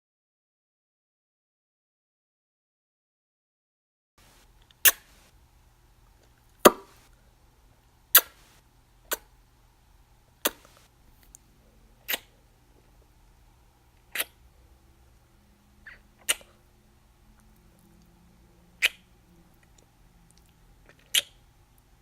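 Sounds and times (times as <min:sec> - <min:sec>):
lip-smacking kisses: 0:08.2 - 0:08.4, 0:10.4 - 0:11.4, 0:12.1 - 0:12.3, 0:14.1 - 0:14.4, 0:15.9 - 0:16.6, 0:18.8 - 0:19.0, 0:19.7 - 0:21.4.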